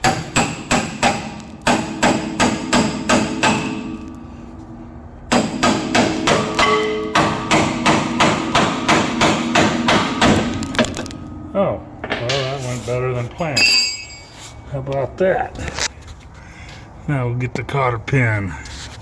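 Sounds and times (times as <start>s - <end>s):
hammer striking metal: 0.0s - 12.6s, 13.5s - 14.3s.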